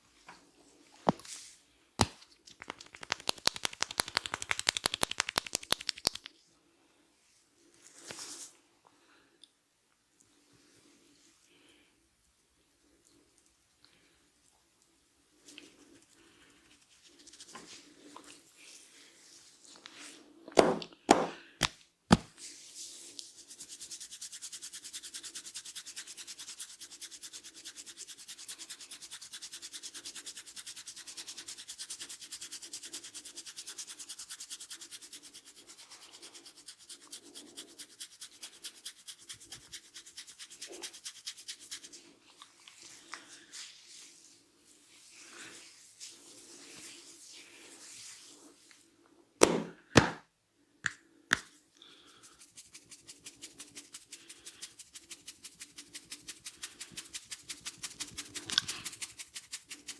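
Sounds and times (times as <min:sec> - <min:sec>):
hands rubbing through hair: 0:01.2 - 0:06.3, 0:07.9 - 0:08.5, 0:22.4 - 0:48.7, 0:51.3 - 0:59.9
sharp smacks: 0:02.0 - 0:06.3, 0:49.4 - 0:50.2.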